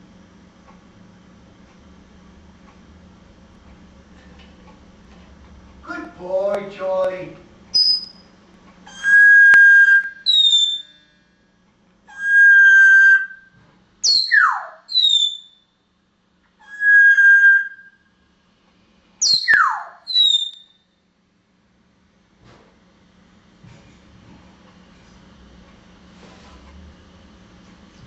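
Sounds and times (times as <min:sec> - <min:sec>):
parrot whistling a phrase: 0:07.8 - 0:08.2, 0:08.9 - 0:11.0, 0:12.1 - 0:15.6, 0:16.6 - 0:18.0, 0:19.2 - 0:20.7.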